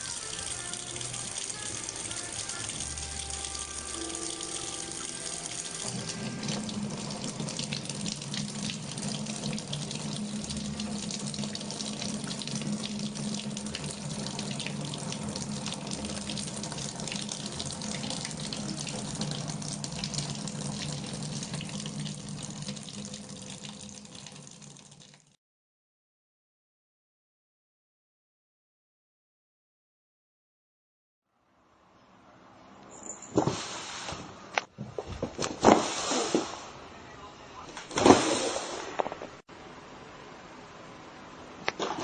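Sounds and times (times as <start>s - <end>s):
water running from a tap: 0.0s - 25.4s.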